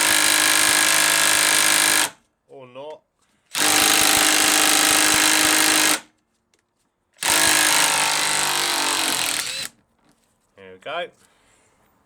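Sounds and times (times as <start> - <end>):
impact wrench hammering: 3.6 - 6.0, 7.2 - 9.7.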